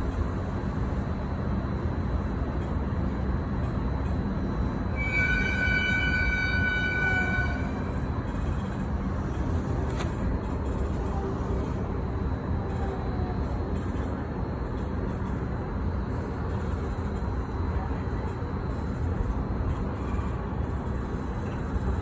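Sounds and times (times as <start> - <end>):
train running rumble: 0.0 - 22.0
train horn blast: 5.0 - 8.1.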